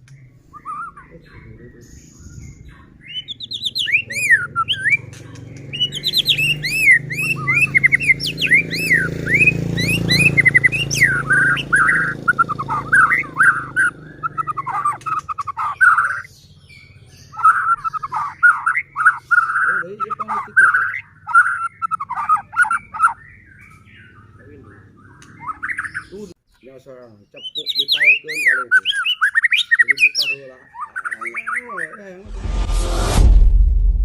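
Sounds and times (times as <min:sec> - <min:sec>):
bird singing whistled trills: 0:00.0 - 0:26.2, 0:27.3 - 0:32.0
low background rumble: 0:32.3 - 0:34.0.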